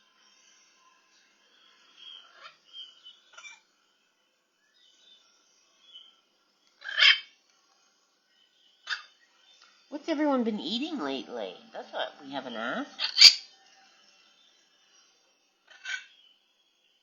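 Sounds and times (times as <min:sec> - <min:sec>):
parrots chirping and whistling: 0:01.9 - 0:03.6, 0:06.8 - 0:07.4, 0:08.8 - 0:09.2, 0:12.4 - 0:13.6, 0:15.6 - 0:16.4
parrot squawk: 0:02.2 - 0:02.6, 0:03.3 - 0:03.6, 0:06.8 - 0:07.4, 0:08.8 - 0:09.2, 0:12.4 - 0:13.5, 0:15.6 - 0:16.2.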